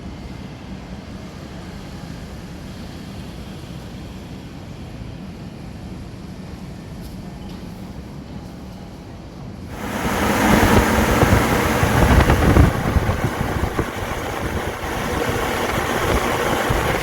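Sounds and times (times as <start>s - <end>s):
low drone: 9.7s - 17.0s
ventilation fans humming: 9.7s - 17.0s.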